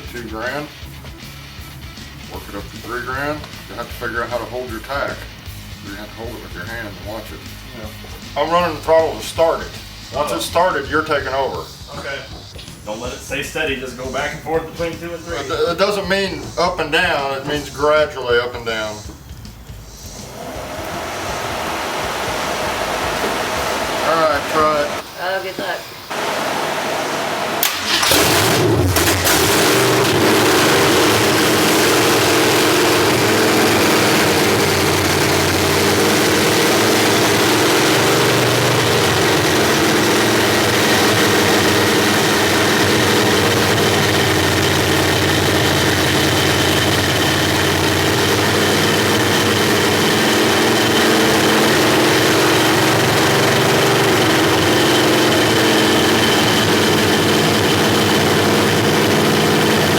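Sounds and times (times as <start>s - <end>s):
engine cranking: 10.2s - 25.0s, 26.1s - 59.9s
loud engine idling fast: 19.6s - 25.0s, 26.1s - 59.9s.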